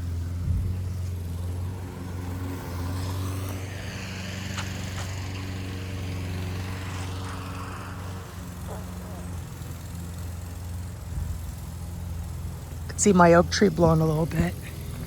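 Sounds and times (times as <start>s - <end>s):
lawn mower engine running: 0.0s - 15.0s.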